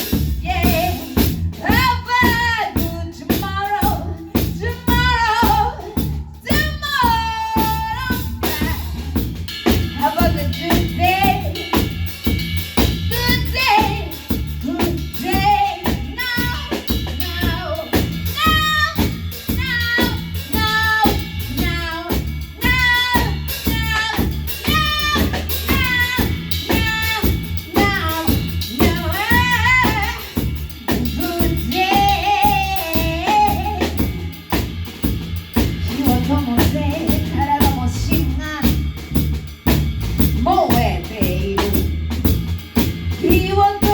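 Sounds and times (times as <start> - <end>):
bass line: 0.0 - 43.9
drum kit: 0.0 - 43.9
person singing: 30.9 - 34.1.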